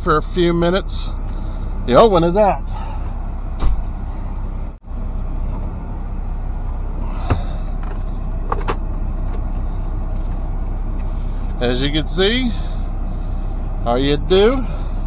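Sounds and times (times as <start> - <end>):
truck engine idling: 0.0 - 15.0.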